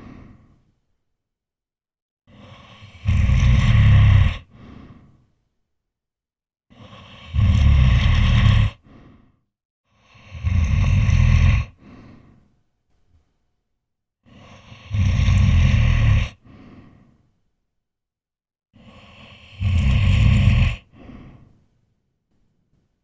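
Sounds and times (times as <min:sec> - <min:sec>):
person snoring: 0:02.3 - 0:05.2, 0:06.8 - 0:09.3, 0:10.0 - 0:12.4, 0:14.3 - 0:17.1, 0:18.8 - 0:21.6.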